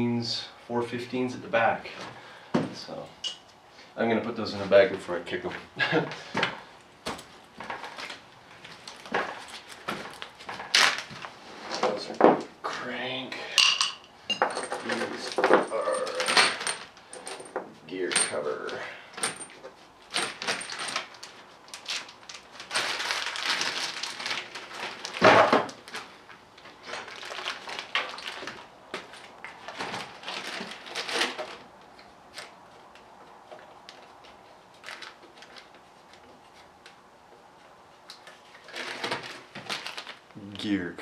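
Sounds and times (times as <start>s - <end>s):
metal bolts clinking: 13.6s - 18.6s
plastic bag rustling: 20.0s - 32.9s, 33.6s - 36.6s, 38.2s - 40.4s.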